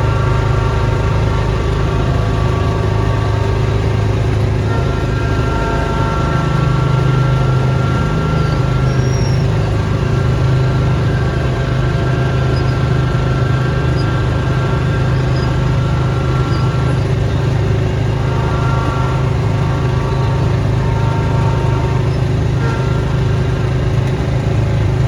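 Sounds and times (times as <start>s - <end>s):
snowblower engine running: 0.0s - 25.0s.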